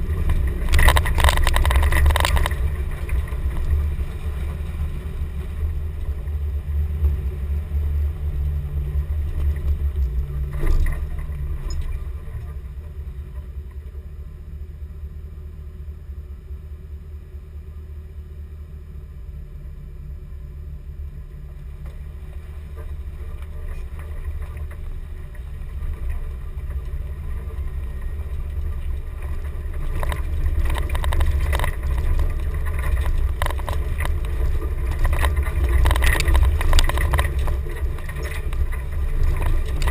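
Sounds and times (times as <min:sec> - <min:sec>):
sharp knocks and rattles: 0:00.0 - 0:05.1, 0:21.8 - 0:39.9
truck engine deep rumble: 0:00.0 - 0:39.9.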